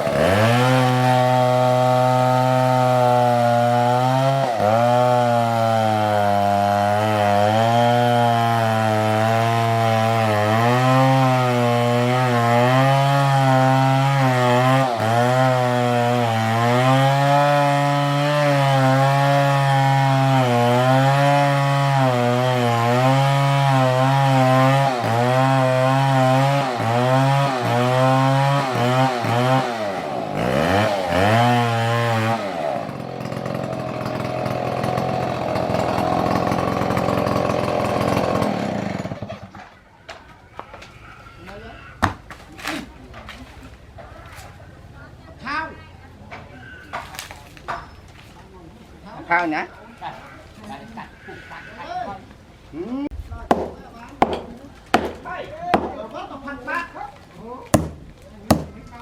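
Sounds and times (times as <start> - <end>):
chainsaw cutting tree trunk: 0.0 - 39.6, 53.5 - 56.2, 57.6 - 59.0.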